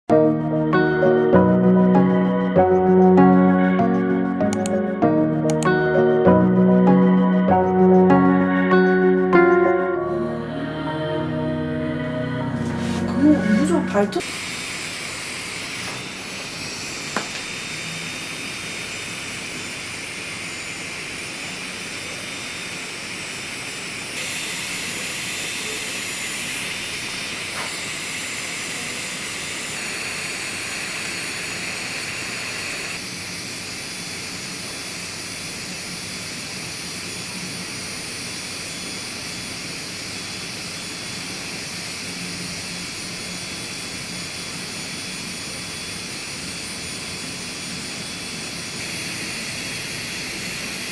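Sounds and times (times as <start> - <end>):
electric motor whining: 0.7 - 10.0, 12.0 - 50.9
single click: 4.5 - 4.8, 5.5 - 5.8.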